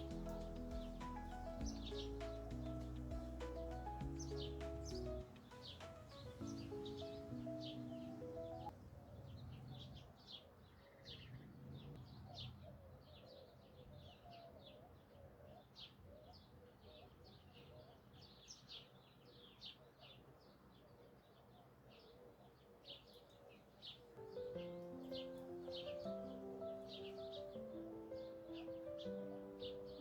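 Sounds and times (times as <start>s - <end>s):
low wavering bird calls: 0.0s - 8.7s, 23.3s - 30.0s
small birds chirping: 0.0s - 30.0s.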